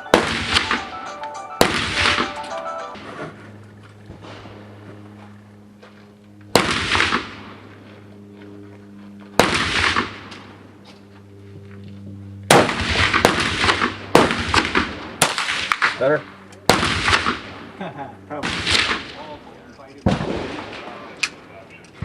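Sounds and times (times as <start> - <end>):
rifle shots echoing: 0.0 - 1.0, 1.6 - 2.4, 6.5 - 7.8, 9.4 - 10.6, 12.5 - 17.7, 18.4 - 19.2, 20.0 - 21.4
steady low hum: 0.0 - 22.0.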